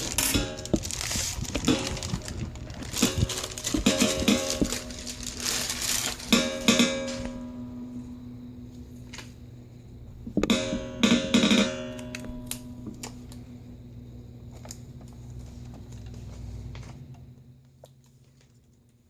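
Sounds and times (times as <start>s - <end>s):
guitar chords strummed: 0.0s - 9.5s, 10.2s - 13.8s.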